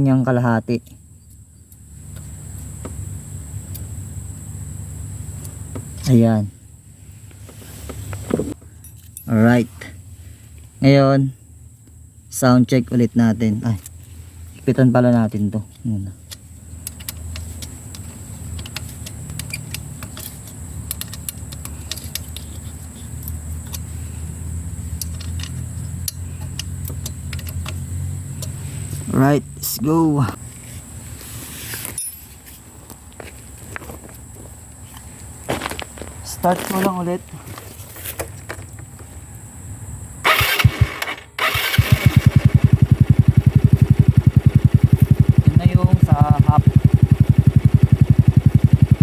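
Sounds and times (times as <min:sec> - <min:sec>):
metallic clicks on exhaust clamp: 0:15.3 - 0:23.9, 0:24.9 - 0:28.6
motorcycle engine idling: 0:16.2 - 0:28.7, 0:40.3 - 0:49.0
electric starter cranking: 0:40.2 - 0:43.4.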